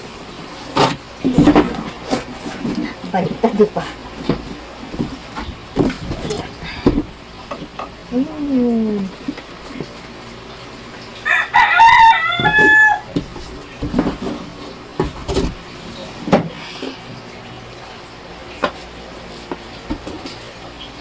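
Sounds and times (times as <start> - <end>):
cardboard box knocks and clatters: 0.7 - 3.0, 4.2 - 7.1, 12.4 - 15.7
rooster crowing: 11.2 - 13.2.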